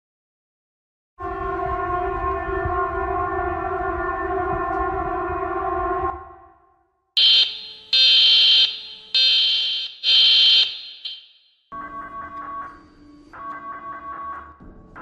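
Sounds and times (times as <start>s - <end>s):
high-pitched alarm beeps: 7.2s - 11.4s
buzzing alarm tone: 7.2s - 12.4s.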